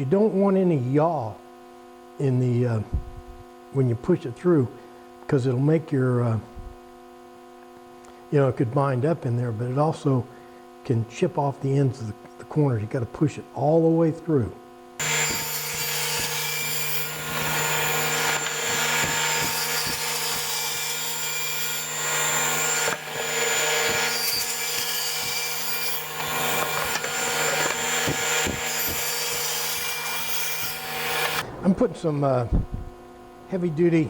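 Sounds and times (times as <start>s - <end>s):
table saw cutting wood: 15.0s - 32.2s.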